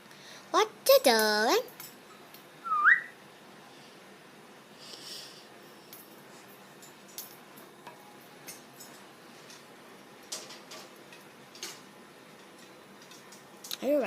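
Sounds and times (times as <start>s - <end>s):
parrot whistle rising in pitch: 2.6s - 3.2s.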